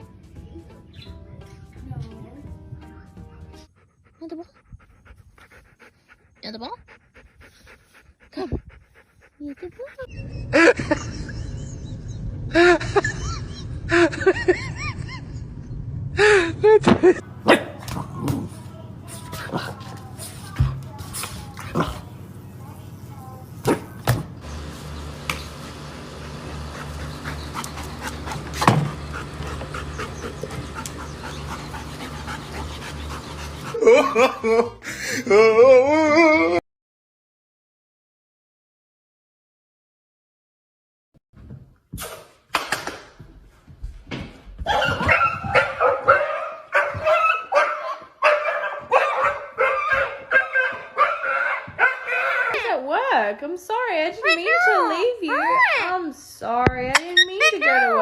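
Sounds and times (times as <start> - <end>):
dog panting: 3.1 - 10.2, 25.5 - 34.0
dog barking and yipping: 44.6 - 52.6, 57.0 - 58.0.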